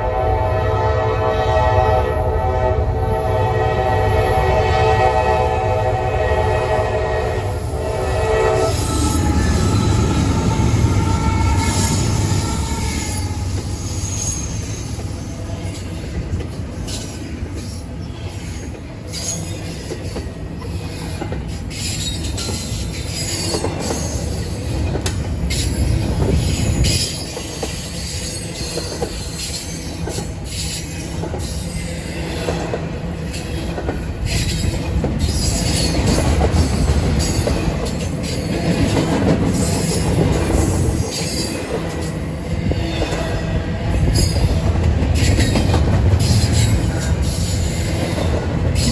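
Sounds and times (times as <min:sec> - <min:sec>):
wheels rumbling on rail: 0:00.0 - 0:48.9
wheel squeal: 0:08.6 - 0:15.7.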